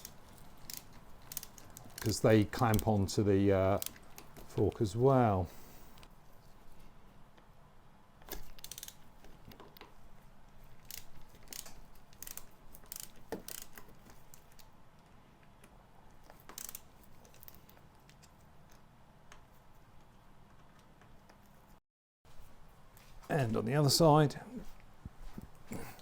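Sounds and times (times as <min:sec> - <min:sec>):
ratchet clicking: 0:00.0 - 0:02.9, 0:03.8 - 0:04.2, 0:08.3 - 0:09.0, 0:10.9 - 0:13.9, 0:16.4 - 0:17.6.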